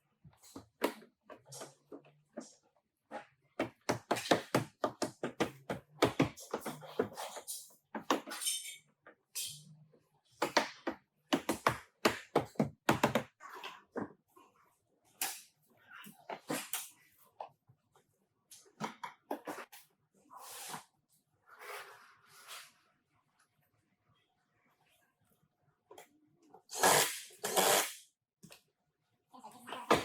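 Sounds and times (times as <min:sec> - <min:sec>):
sharp knocks and taps: 0:03.6 - 0:07.2, 0:10.4 - 0:13.3.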